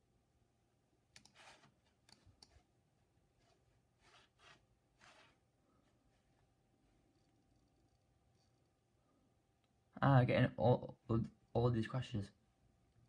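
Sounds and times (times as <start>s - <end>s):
computer mouse clicks: 1.1s - 2.6s.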